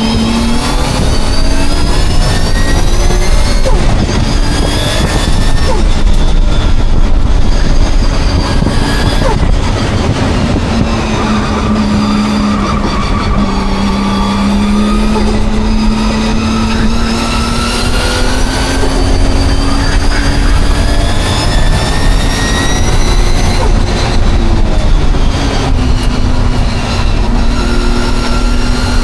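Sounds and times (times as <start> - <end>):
race car engine revving: 0.0 - 29.0.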